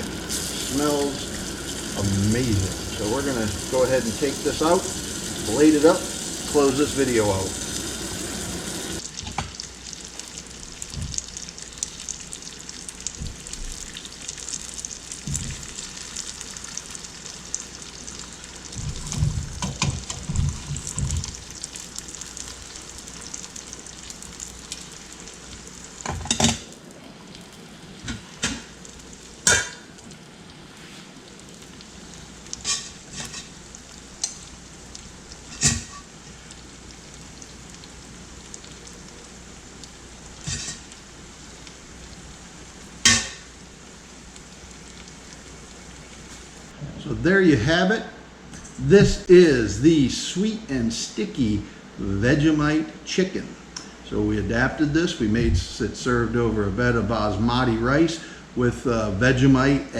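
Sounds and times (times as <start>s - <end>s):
chicken wings sizzling in sauce: 0.0s - 46.8s.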